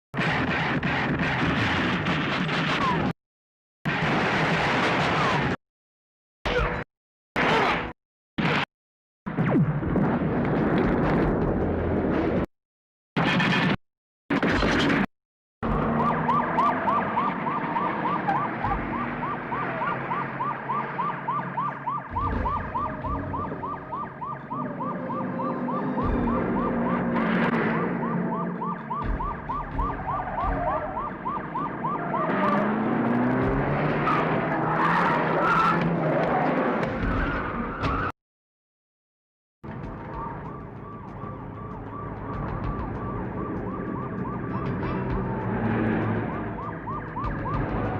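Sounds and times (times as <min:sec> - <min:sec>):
car engines running: 0:15.6 - 0:37.3, 0:39.7 - 0:47.9
siren wailing in yelping sweeps: 0:15.7 - 0:33.1, 0:40.1 - 0:47.9.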